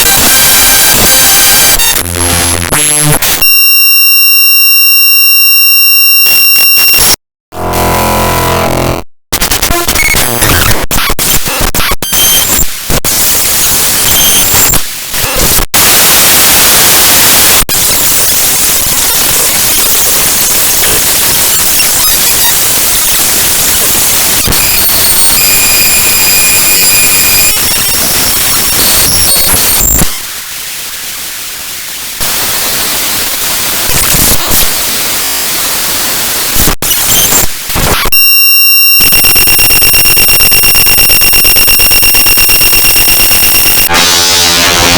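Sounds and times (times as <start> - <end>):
buzzing tone: 0.0 - 9.0, 36.9 - 44.9
harsh digital static: 0.0 - 44.9.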